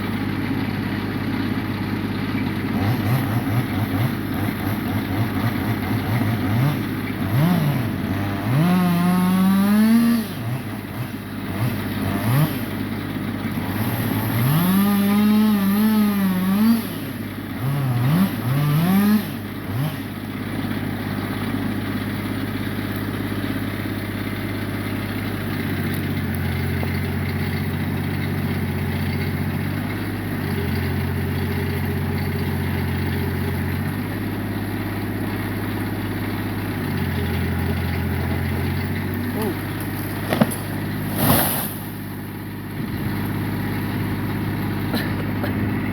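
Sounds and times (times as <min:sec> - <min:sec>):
engine revving: 0:02.7 - 0:20.2, 0:35.8 - 0:45.5.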